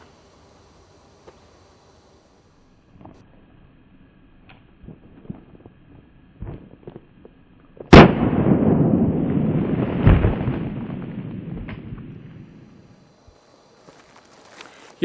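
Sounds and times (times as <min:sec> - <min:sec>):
rolling rumble: 0:00.0 - 0:15.0
loud blast: 0:07.9 - 0:13.0
thud: 0:10.0 - 0:12.2.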